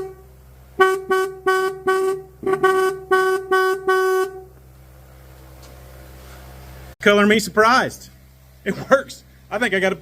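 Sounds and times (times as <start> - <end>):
electric car horn honking: 0.0 - 4.6.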